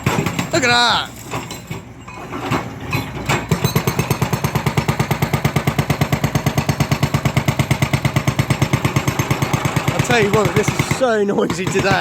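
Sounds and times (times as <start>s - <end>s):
demolition hammer pounding rapidly: 0.0s - 0.9s, 3.4s - 12.0s.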